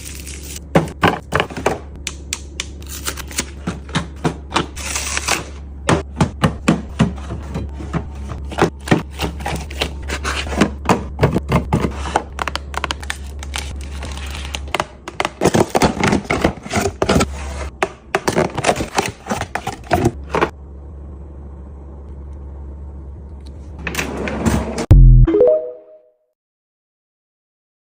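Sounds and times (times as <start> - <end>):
snack packages clicking and rustling: 11.7 - 17.2.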